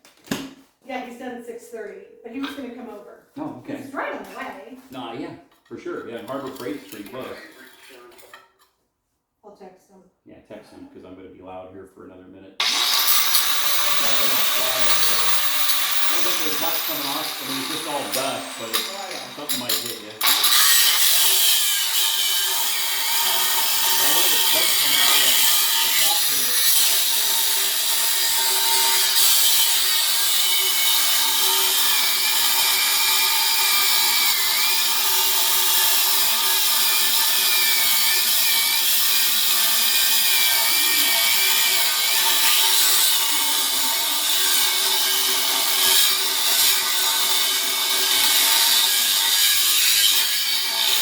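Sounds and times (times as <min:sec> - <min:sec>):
electric grinder cutting steel: 0:06.2 - 0:08.1, 0:12.6 - 0:51.0.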